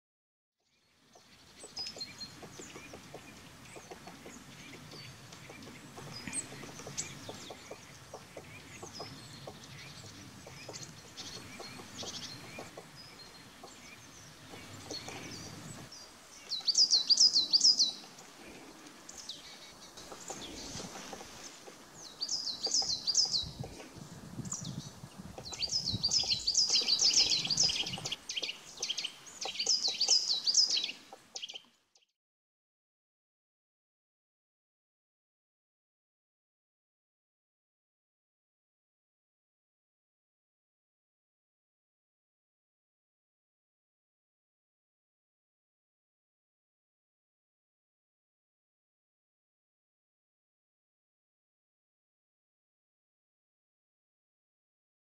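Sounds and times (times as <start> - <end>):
birds chirping: 0.6 - 32.1.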